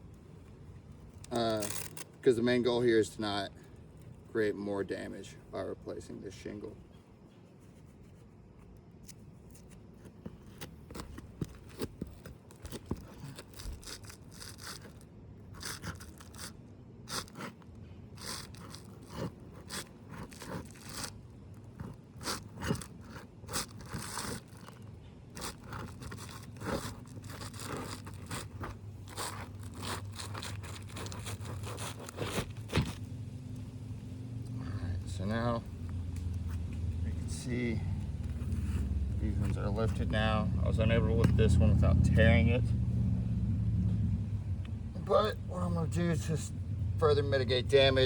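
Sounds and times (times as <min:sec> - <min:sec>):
roof shingles scraping and crunching: 0:01.1 - 0:03.7, 0:09.5 - 0:33.1.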